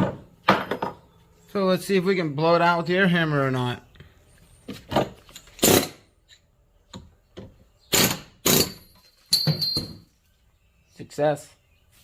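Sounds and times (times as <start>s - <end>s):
pneumatic air hammer bursts: 5.6s - 6.0s, 7.9s - 8.9s.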